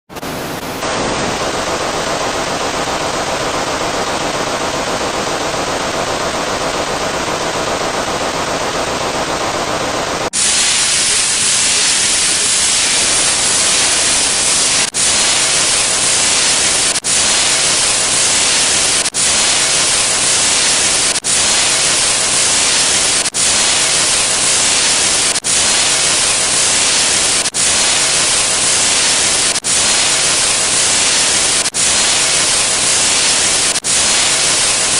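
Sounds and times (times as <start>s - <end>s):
static hiss: 0.1s - 34.9s.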